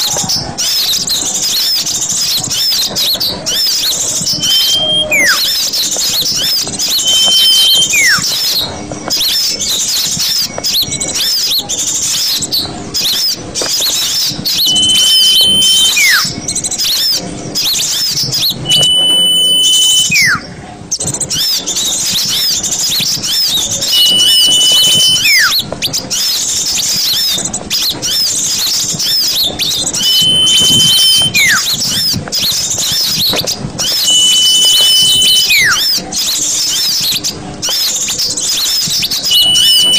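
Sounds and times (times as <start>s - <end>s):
small birds twittering: 0.0s - 39.9s
loud bird whistle sliding down: 3.5s - 8.6s, 14.0s - 17.1s, 17.7s - 20.5s, 22.1s - 25.6s, 28.0s - 37.1s, 38.5s - 39.9s.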